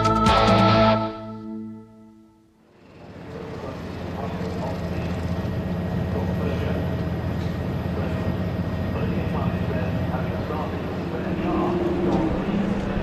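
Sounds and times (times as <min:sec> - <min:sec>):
low vehicle rumble: 0:02.7 - 0:13.0.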